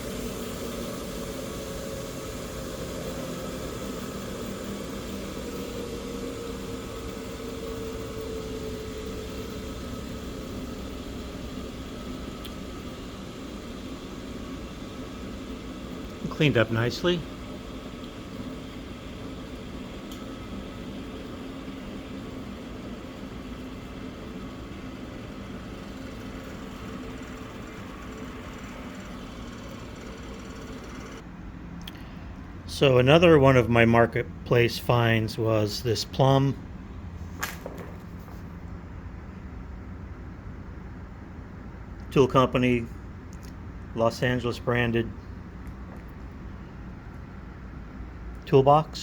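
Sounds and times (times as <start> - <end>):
bench grinder motor humming: 0.0 - 31.2.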